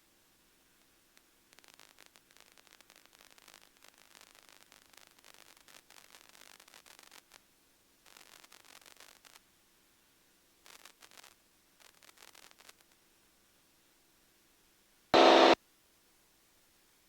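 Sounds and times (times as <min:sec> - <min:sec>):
faint crackling static: 0:00.0 - 0:15.6
low steady hum: 0:15.2 - 0:15.6.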